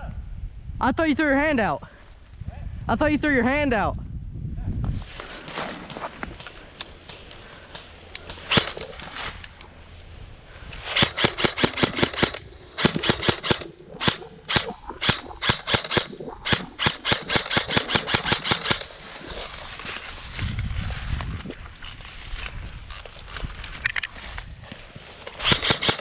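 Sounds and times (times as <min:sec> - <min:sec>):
airsoft guns firing: 0:08.2 - 0:09.0, 0:10.9 - 0:19.0, 0:25.4 - 0:26.0.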